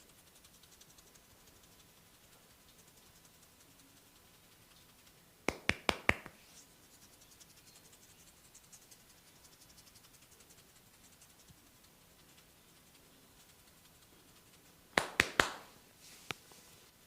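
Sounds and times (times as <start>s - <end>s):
fingers scratching through hair: 0.0s - 17.0s
sharp hair cracks: 5.4s - 6.4s, 14.9s - 15.8s.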